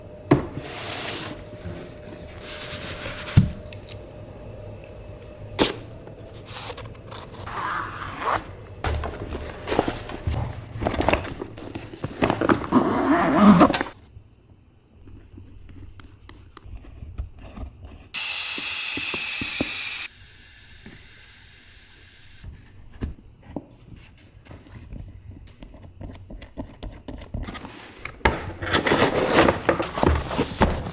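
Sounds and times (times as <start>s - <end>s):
scraping and rubbing: 0.6s - 3.7s
steady hiss: 18.2s - 22.5s.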